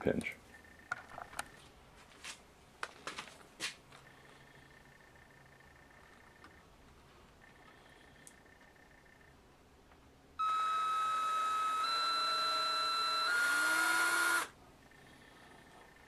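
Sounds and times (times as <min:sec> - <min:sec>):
power drill whine: 0:10.4 - 0:14.6.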